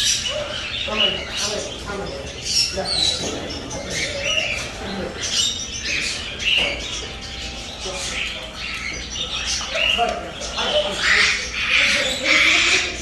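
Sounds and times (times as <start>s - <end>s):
birds chirping and squawking: 0.0s - 13.0s.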